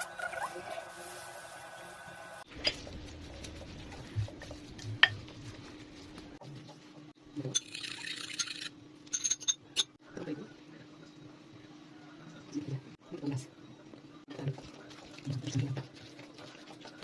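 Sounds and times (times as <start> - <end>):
utensils clinking against dishes: 7.5 - 10.0.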